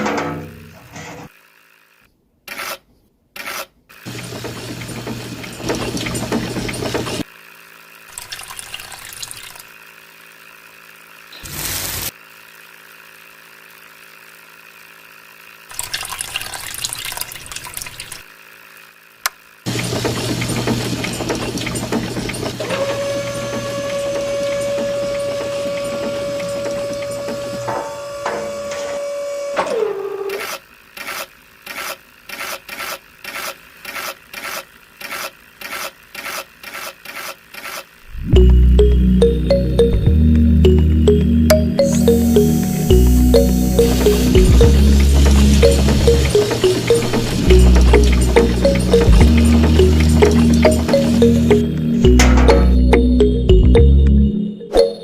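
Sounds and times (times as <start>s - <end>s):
water pouring and splashing: 8.1s - 9.7s, 15.7s - 18.3s
small electric motor humming: 9.2s - 15.9s, 22.6s - 38.3s.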